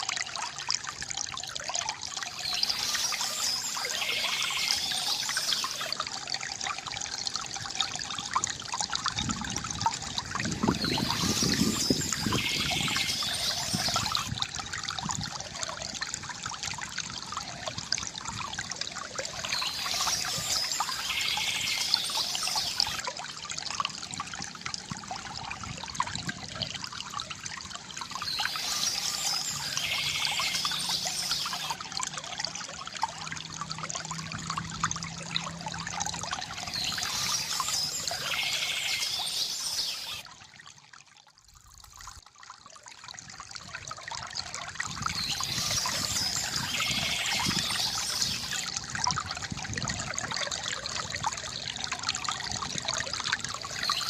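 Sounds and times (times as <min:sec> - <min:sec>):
river water gurgling: 0:00.0 - 0:54.0
birds chirping: 0:02.3 - 0:05.9, 0:10.7 - 0:14.3, 0:19.3 - 0:23.0, 0:28.0 - 0:31.8, 0:36.5 - 0:40.2, 0:45.1 - 0:48.7.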